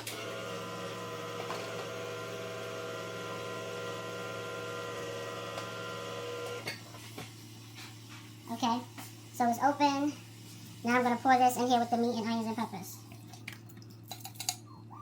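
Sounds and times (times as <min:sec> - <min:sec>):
electric can opener motor: 0:00.0 - 0:07.3.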